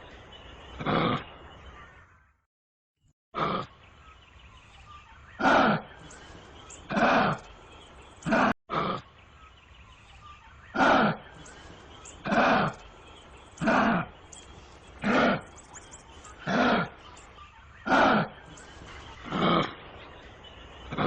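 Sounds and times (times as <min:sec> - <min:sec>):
kangaroo harsh calls: 0:05.3 - 0:06.2, 0:06.8 - 0:07.5, 0:08.2 - 0:09.1, 0:10.6 - 0:20.0.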